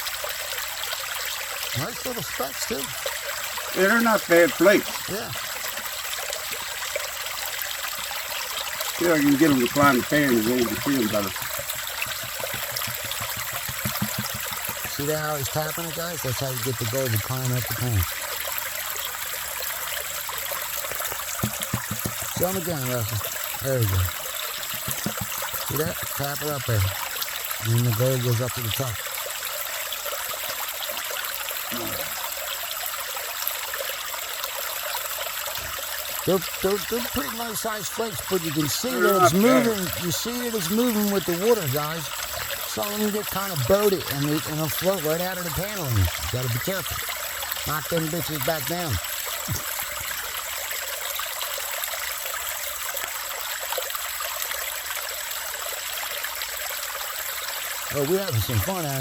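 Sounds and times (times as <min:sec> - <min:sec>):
creek water running: 0:00.0 - 0:59.0
brief voice: 0:31.7 - 0:32.1, 0:38.6 - 0:40.1.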